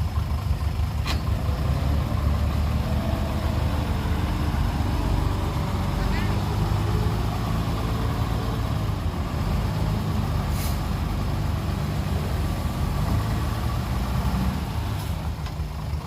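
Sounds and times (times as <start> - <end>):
heavy diesel engines running: 0.0 - 16.0
short hiss: 10.5 - 10.9.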